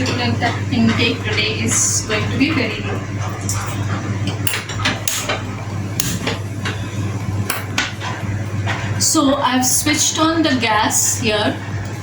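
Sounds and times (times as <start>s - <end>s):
pots and utensils knocking: 3.5s - 6.8s, 7.5s - 8.8s.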